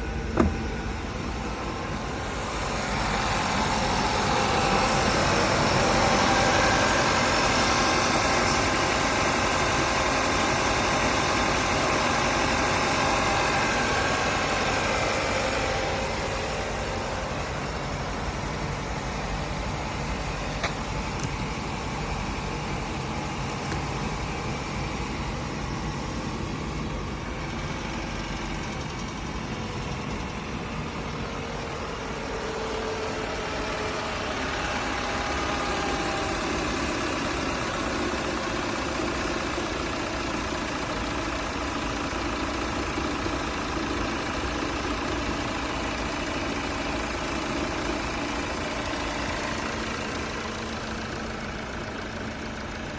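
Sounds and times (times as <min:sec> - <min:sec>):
car engine idling: 0:00.0 - 0:52.9.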